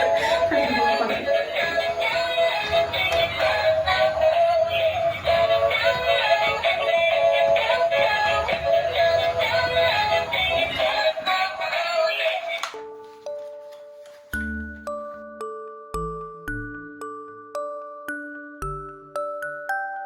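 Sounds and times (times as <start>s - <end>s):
toy playing tinny sung melody: 0.0s - 12.8s.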